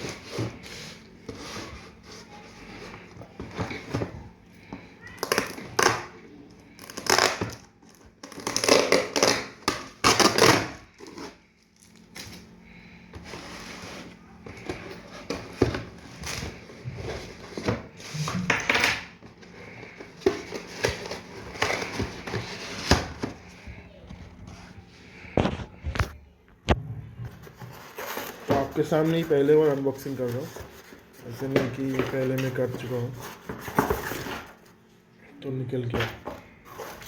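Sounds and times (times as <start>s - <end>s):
packaging rustling and crinkling: 19.2s - 24.7s, 27.3s - 34.9s, 36.2s - 37.0s.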